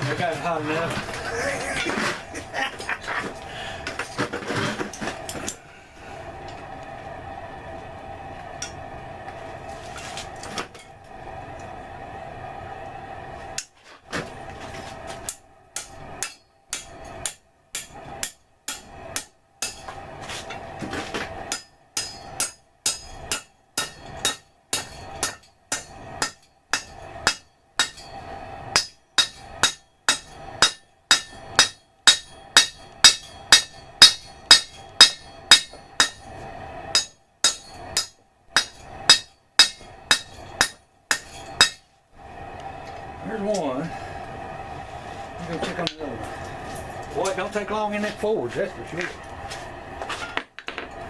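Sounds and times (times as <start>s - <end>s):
steady hum: 0.0s - 51.0s
hammer blows on metal anvil: 21.5s - 36.3s, 36.9s - 41.8s.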